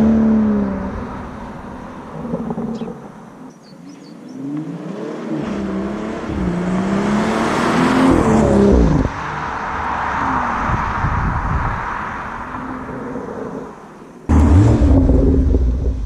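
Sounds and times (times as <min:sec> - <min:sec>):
car engine revving: 0:04.3 - 0:16.0.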